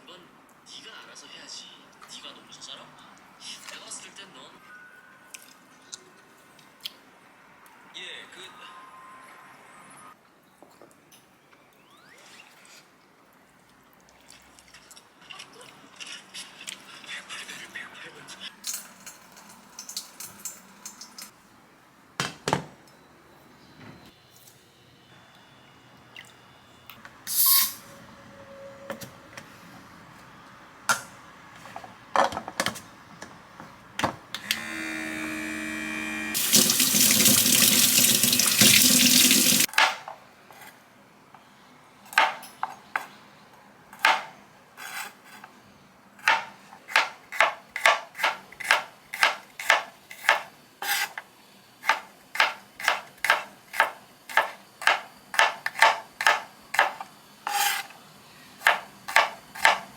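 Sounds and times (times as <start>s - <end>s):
tap water running into sink: 36.4s - 39.7s.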